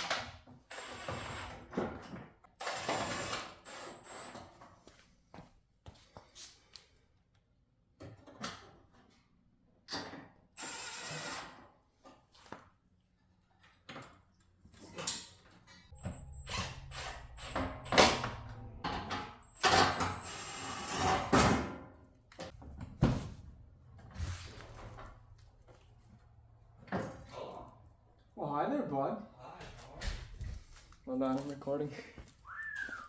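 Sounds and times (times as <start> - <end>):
power tool whirring: 10.6 - 11.5, 15.9 - 21.4.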